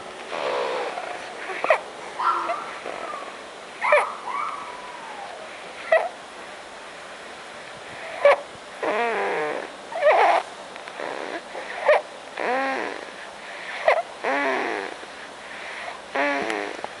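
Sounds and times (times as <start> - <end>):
man snoring with snorts: 11.0 - 13.2, 13.8 - 15.0, 16.1 - 16.8.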